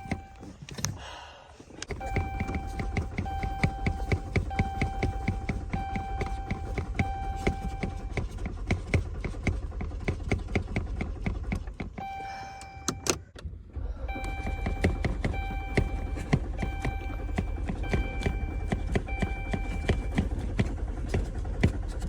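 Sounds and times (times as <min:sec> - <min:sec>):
repeated beeping tone: 0:00.0 - 0:00.4, 0:02.0 - 0:08.2, 0:12.0 - 0:13.1, 0:14.0 - 0:20.3
car engine cranking: 0:00.0 - 0:01.0, 0:01.6 - 0:22.0.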